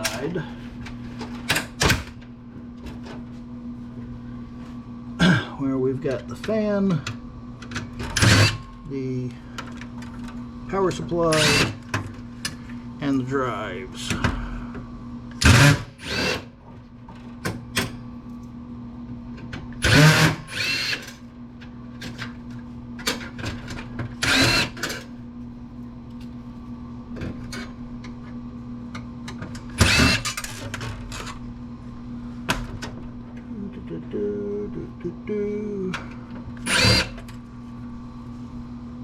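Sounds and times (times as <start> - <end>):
steady low hum: 0.0 - 39.0
cordless drill whining: 15.4 - 16.4, 19.8 - 21.0, 24.2 - 24.8, 29.8 - 30.4, 36.6 - 37.2.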